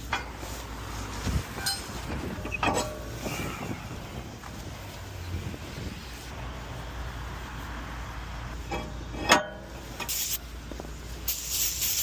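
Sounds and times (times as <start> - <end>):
metal clink: 1.6 - 3.1
hissing spray bursts: 10.0 - 10.4, 11.2 - 12.0.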